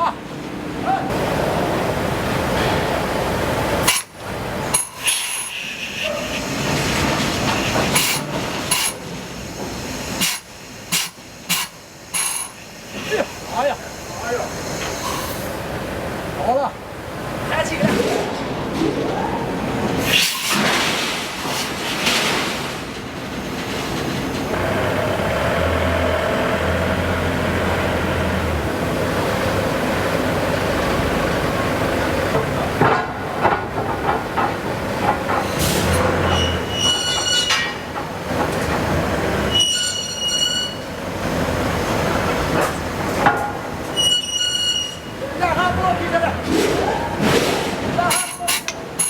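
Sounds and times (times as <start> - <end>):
high-pitched metallic squeals: 35.8 - 37.9, 39.5 - 41.0, 43.9 - 45.2.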